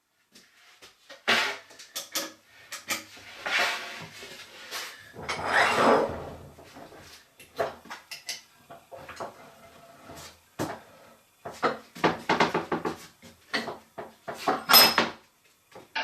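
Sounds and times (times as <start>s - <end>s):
bench vise sliding rush: 5.2s - 6.5s.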